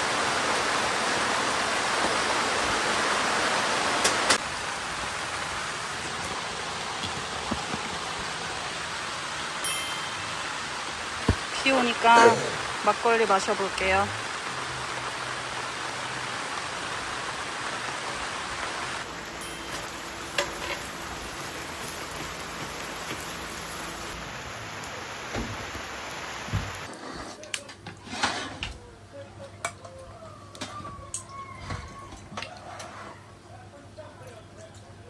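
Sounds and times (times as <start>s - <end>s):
rain hissing: 0.0s - 27.0s.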